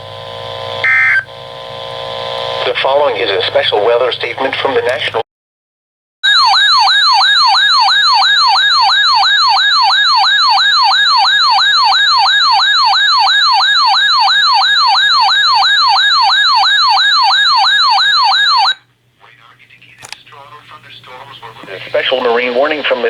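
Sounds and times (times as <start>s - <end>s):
electronic yelp siren: 0.6s - 1.3s, 6.2s - 18.8s.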